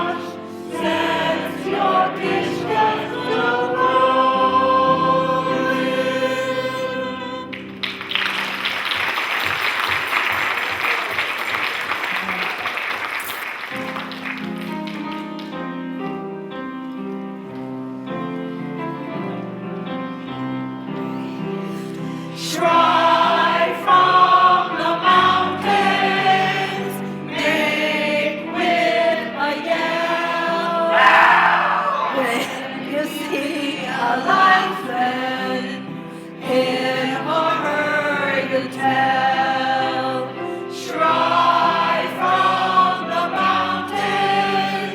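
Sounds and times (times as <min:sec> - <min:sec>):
group of voices singing: 0:00.0 - 0:07.6, 0:21.8 - 0:44.9.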